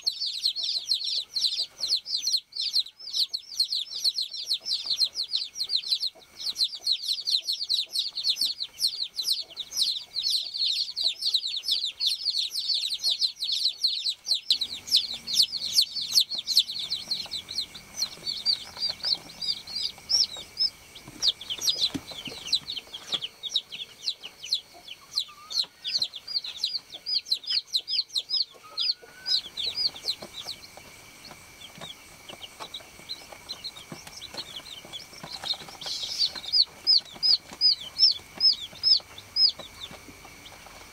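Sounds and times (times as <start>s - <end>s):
baby chicks peeping: 0.0s - 40.9s.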